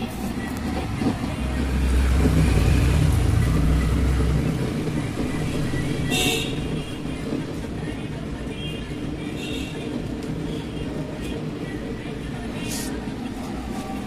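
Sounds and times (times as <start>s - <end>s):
heavy low hum: 0.0s - 8.2s.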